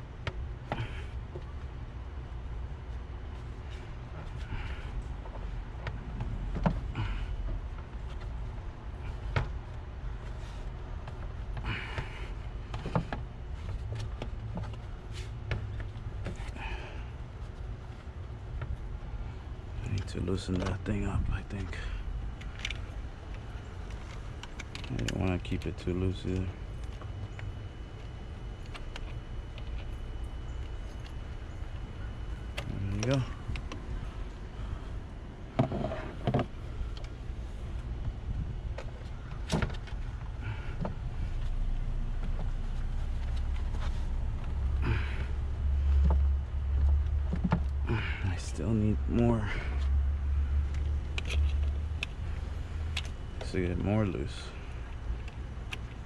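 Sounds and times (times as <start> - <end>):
steady low rumble: 0.0 - 56.0
knocks and clicks of car parts: 0.2 - 1.5, 5.3 - 8.4, 11.0 - 16.5, 35.5 - 37.1, 45.9 - 47.8.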